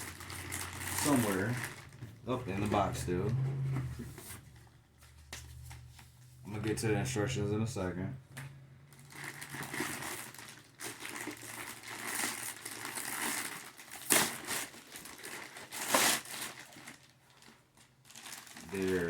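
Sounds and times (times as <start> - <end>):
plastic packaging crinkling: 0.0 - 3.4, 8.8 - 19.0.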